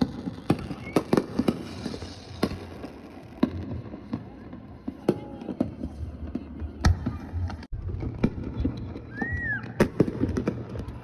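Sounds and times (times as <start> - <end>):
firework whistle: 0.0 - 2.6, 9.0 - 10.0
fireworks bangs and cracks: 0.0 - 11.0.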